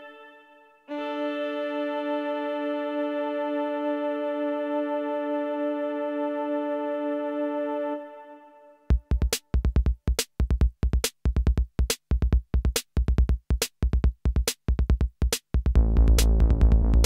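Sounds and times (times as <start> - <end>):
drum machine beat: 8.9 - 17.0
sustained bass and synth: 15.8 - 17.0.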